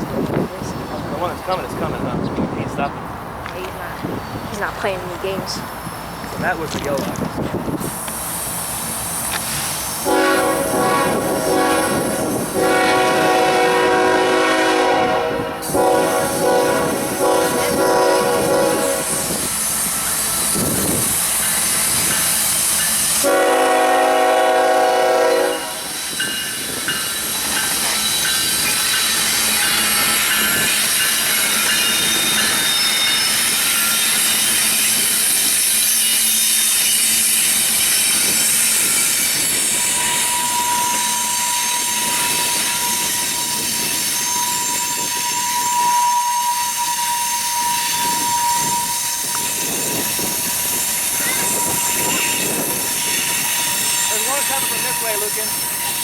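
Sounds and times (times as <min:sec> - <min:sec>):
freight cars rumbling: 0:00.0 - 0:10.0
train horn blasts: 0:10.0 - 0:19.5, 0:23.2 - 0:26.0, 0:40.0 - 0:50.3.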